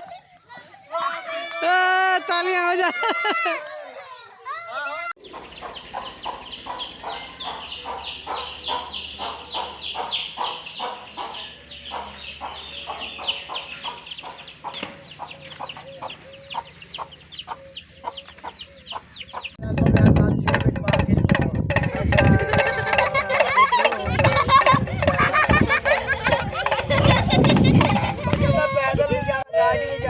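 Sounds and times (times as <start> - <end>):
chickens chirping: 3.6 - 19.6, 21.7 - 29.3.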